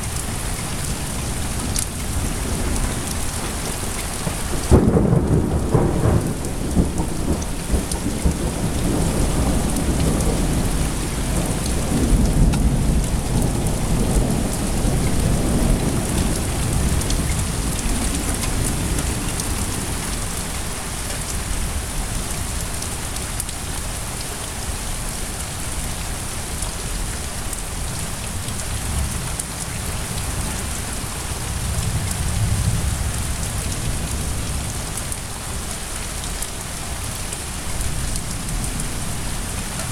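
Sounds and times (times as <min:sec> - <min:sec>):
steady rain falling: 0:00.0 - 0:39.9
low rolling thunder: 0:00.8 - 0:20.7, 0:28.8 - 0:34.8.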